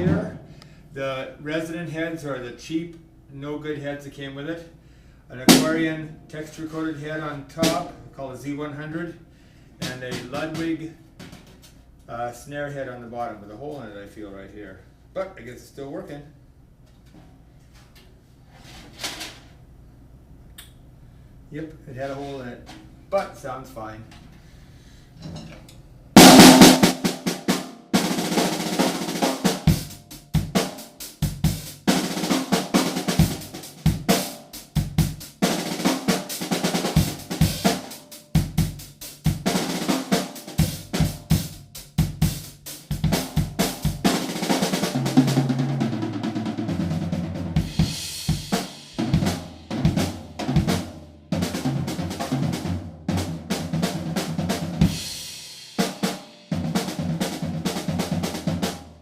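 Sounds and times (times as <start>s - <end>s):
drum kit groove with fills: 0.0s - 0.8s, 5.5s - 6.0s, 7.6s - 7.9s, 9.8s - 11.8s, 26.2s - 59.0s
cymbals: 26.2s - 45.6s, 47.6s - 52.6s.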